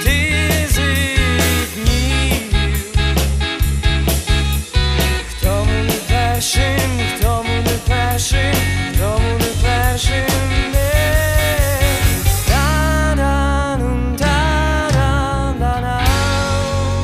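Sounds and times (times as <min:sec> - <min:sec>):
person singing: 0:00.0 - 0:03.6, 0:05.2 - 0:17.0
steady drum beat: 0:00.0 - 0:13.2
low bass notes: 0:00.0 - 0:17.0.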